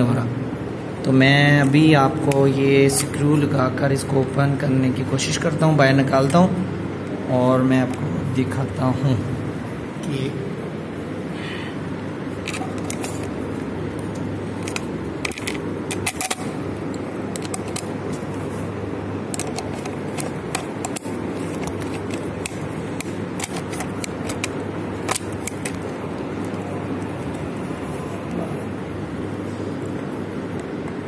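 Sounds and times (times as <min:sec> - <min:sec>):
steady low background noise: 0:00.0 - 0:31.0
screwdriver clicking and scraping metal: 0:12.4 - 0:13.4, 0:14.6 - 0:18.2, 0:19.3 - 0:25.9.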